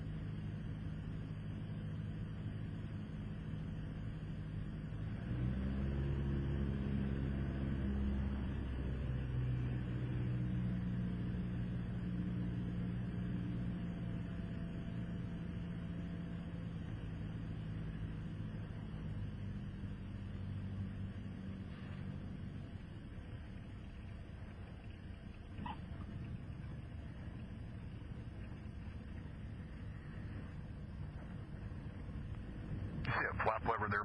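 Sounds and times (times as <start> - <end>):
airplane piston engine and propeller: 0.0 - 34.0.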